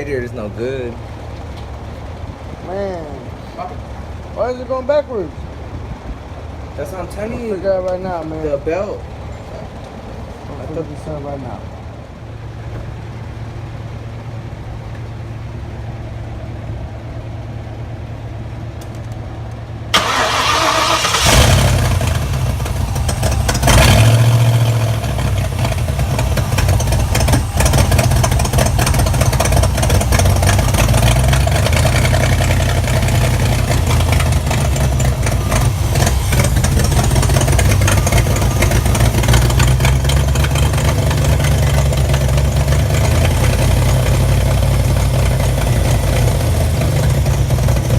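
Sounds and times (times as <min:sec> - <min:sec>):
low steady hum: 0:00.0 - 0:47.9
car engine starting up: 0:19.9 - 0:47.9.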